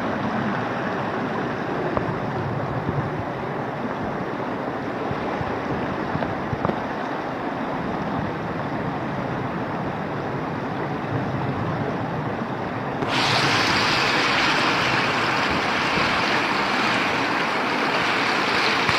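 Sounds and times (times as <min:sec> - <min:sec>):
floodwater rushing: 0:13.0 - 0:18.9.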